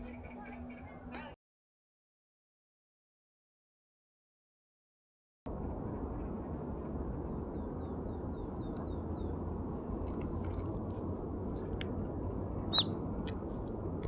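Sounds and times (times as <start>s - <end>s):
outdoor background rumble: 5.5s - 14.0s.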